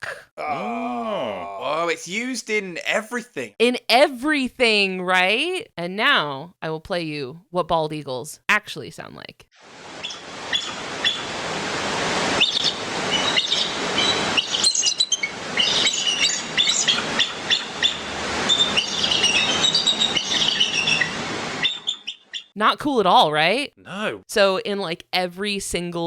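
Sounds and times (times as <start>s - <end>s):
background hiss: 9.6s - 21.6s
eagle chirping: 10.0s - 11.3s, 12.4s - 22.6s.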